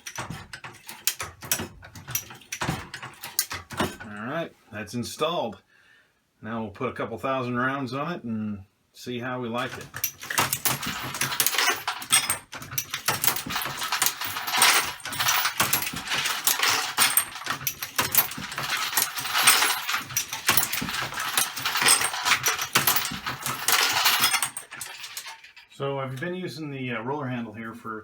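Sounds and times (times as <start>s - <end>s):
reloading press clinking: 0.0s - 4.1s, 9.6s - 25.5s.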